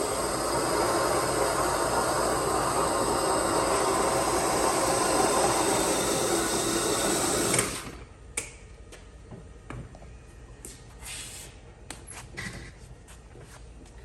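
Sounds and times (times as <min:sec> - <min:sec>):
floor grinder grinding concrete: 0:00.0 - 0:08.0.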